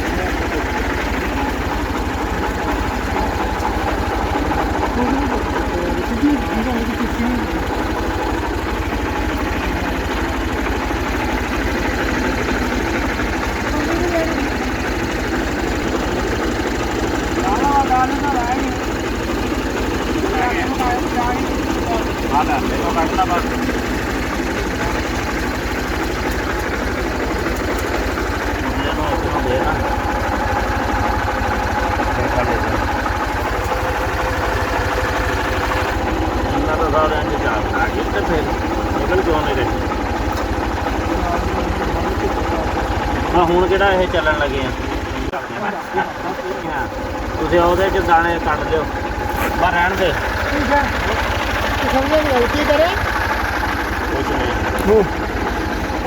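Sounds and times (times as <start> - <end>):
corn-shelling machine running: 0.0 - 56.0
tractor engine throbbing: 0.0 - 56.0.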